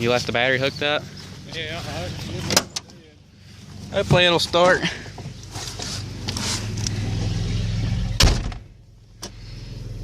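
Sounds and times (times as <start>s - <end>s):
truck engine idling: 0.0s - 10.0s
truck door slamming: 8.2s - 8.7s.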